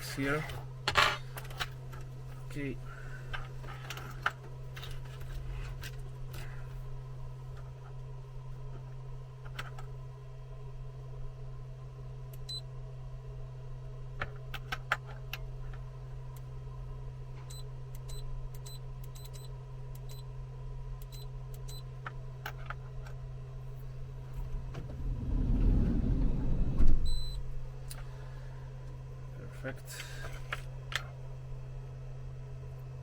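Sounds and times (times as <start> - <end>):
low hum: 23.0 - 29.5.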